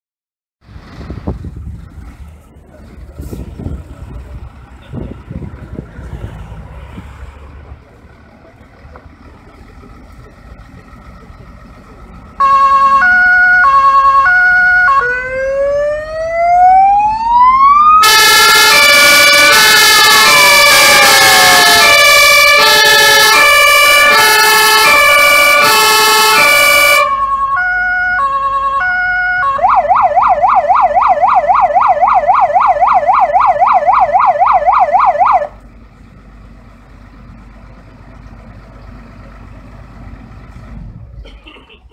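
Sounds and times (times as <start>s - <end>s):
fire engine siren: 12.1s - 35.6s.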